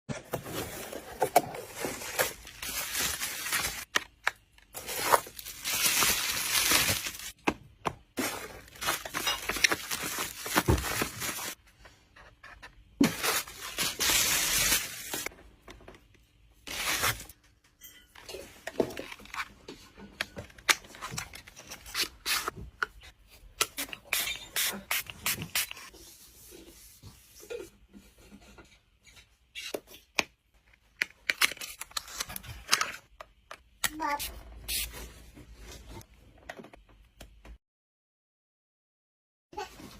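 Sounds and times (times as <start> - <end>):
packaging rustling and crinkling: 0.4 - 7.4, 8.2 - 11.6, 13.0 - 15.3, 16.7 - 17.3.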